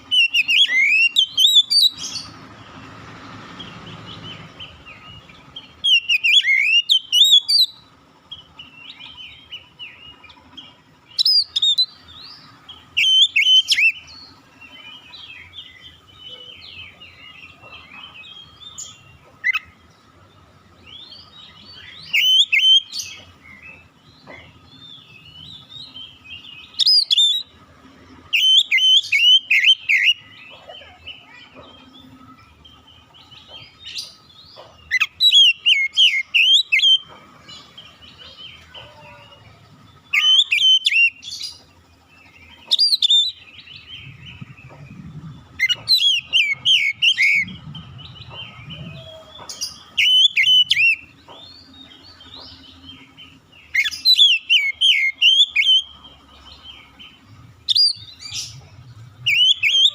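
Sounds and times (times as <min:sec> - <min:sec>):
bird singing whistled phrases: 0:00.1 - 0:02.1, 0:05.8 - 0:07.8, 0:13.0 - 0:14.1, 0:21.0 - 0:23.0, 0:28.3 - 0:30.3, 0:34.9 - 0:37.1, 0:40.0 - 0:41.2, 0:45.6 - 0:51.1, 0:53.7 - 0:55.9, 0:59.3 - 0:59.9
scratchy bird chattering: 0:44.3 - 0:51.6, 0:57.7 - 0:59.9.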